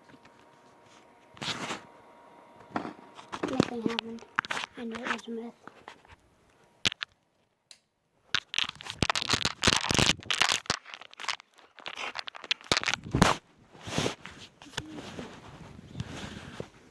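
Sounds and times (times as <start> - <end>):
rustling handling noise: 2.6 - 7.2, 8.3 - 16.9.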